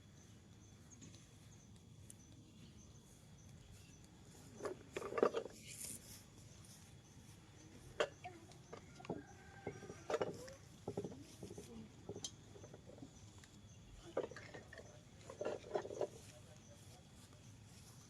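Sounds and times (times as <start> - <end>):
light knocks and clinks: 4.6 - 5.6, 7.8 - 13.2, 14.0 - 16.3.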